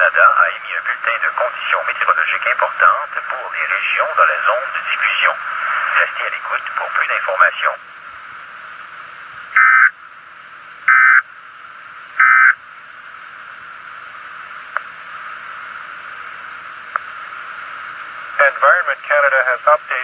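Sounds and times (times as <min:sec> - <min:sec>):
receiver static hiss: 0:00.0 - 0:20.0
buzzing data tone bursts: 0:09.5 - 0:13.4.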